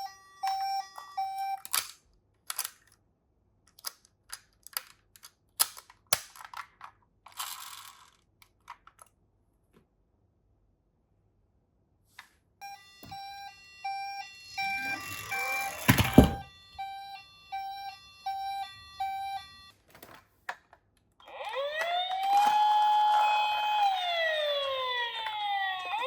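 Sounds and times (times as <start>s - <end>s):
toy siren two-tone hi-lo: 0.0s - 1.8s, 12.6s - 19.7s, 21.2s - 26.0s
toy car clattering rumble: 3.8s - 9.1s
rising siren wail: 12.6s - 19.7s, 21.2s - 26.0s.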